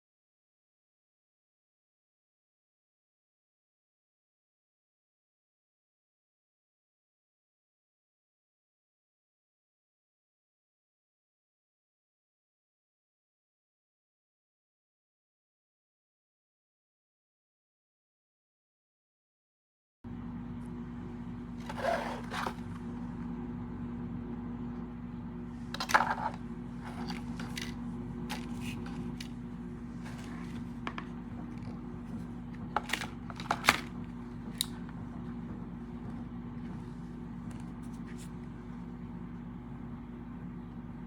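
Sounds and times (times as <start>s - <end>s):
low electrical hum: 20.1s - 41.0s.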